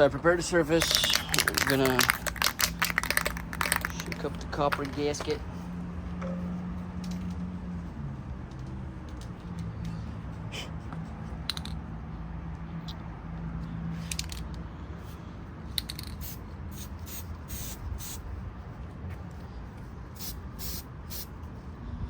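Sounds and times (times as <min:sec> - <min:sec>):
aerosol spray hissing bursts: 0:16.2 - 0:18.2, 0:20.2 - 0:21.3.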